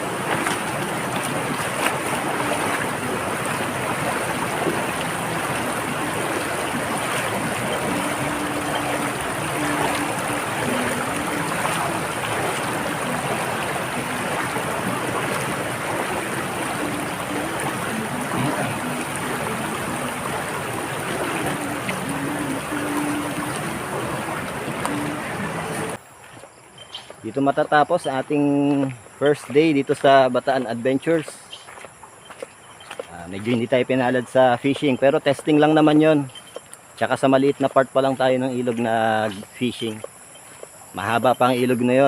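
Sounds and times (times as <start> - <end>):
river water rushing: 0.0 - 26.5, 28.7 - 33.6
high-pitched tone: 7.4 - 26.0.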